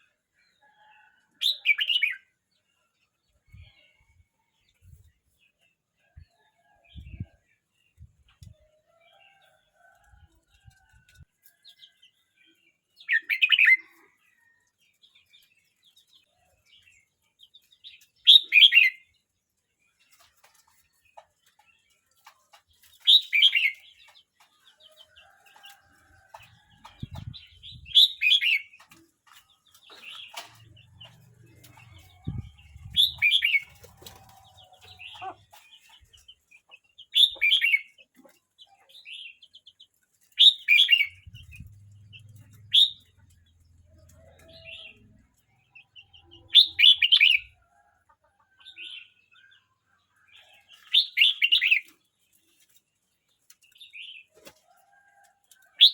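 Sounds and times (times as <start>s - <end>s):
bird song phrases: 40.4s - 47.6s.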